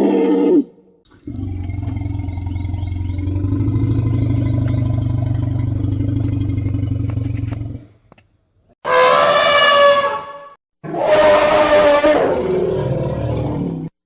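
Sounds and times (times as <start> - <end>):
elephant low rumble: 1.1 - 8.1
loud pitched call: 8.9 - 12.4.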